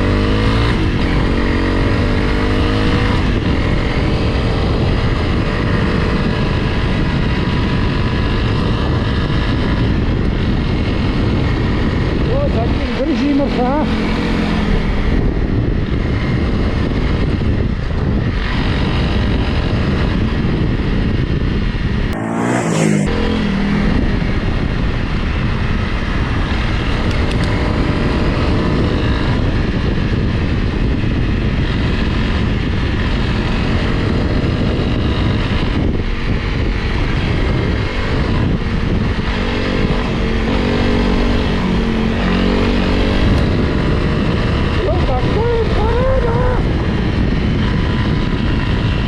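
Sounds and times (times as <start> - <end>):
motorcycle engine revving: 0.0 - 49.0
rough rumbling noise: 22.0 - 25.5, 31.6 - 49.0.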